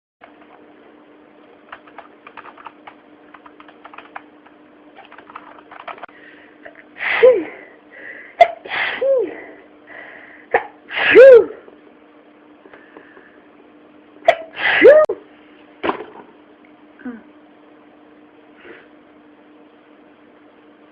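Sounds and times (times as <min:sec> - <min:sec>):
person sneezing: 0:07.0 - 0:07.7, 0:10.5 - 0:11.6, 0:14.3 - 0:15.2.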